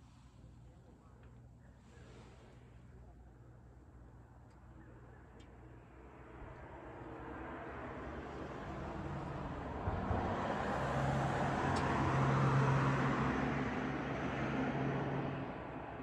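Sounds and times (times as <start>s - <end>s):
motor vehicle passing by: 7.0s - 16.0s.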